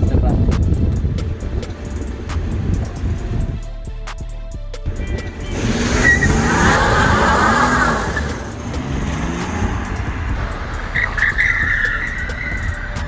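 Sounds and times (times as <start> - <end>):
car engine revving: 4.9 - 13.0
short squeal: 5.9 - 7.0.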